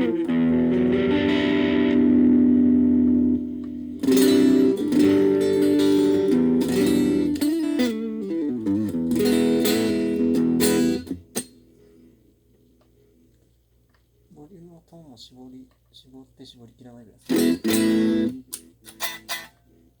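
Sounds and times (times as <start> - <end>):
electric guitar strummed chords: 0.0 - 11.6, 17.3 - 19.5
faint amp hum: 0.0 - 20.0.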